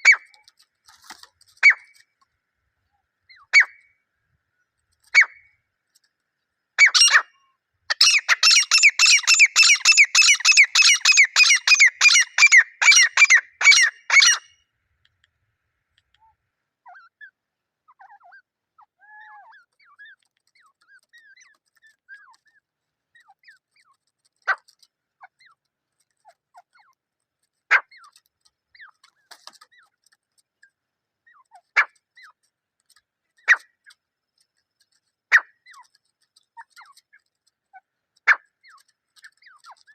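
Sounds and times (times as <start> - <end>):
soft bird chirps: 2.8 - 14.4, 15.0 - 39.9
francolins calling: 6.8 - 7.3, 7.9 - 14.5.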